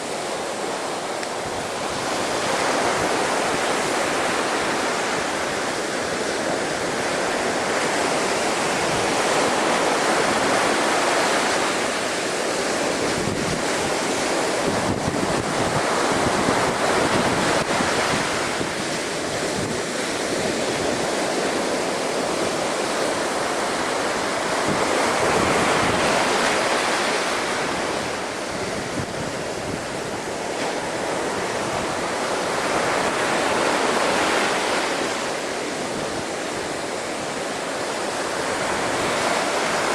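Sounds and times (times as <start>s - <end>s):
waves washing against sea wall: 0.0s - 39.9s
wind buffeting microphone: 0.0s - 39.9s.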